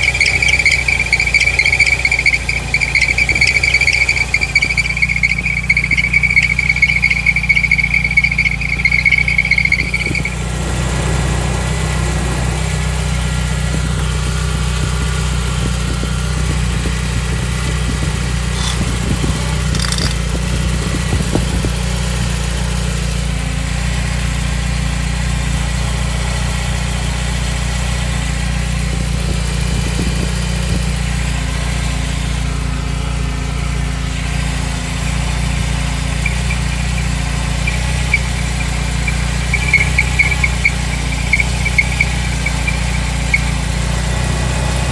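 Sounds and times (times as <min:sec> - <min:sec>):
belt squealing: 0:00.0 - 0:10.5, 0:18.5 - 0:20.3, 0:35.0 - 0:44.4
car engine idling: 0:00.0 - 0:44.9.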